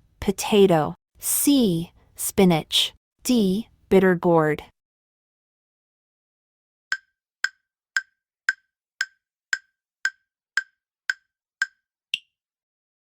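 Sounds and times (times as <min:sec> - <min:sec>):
countdown timer ticks: 0:06.9 - 0:12.4.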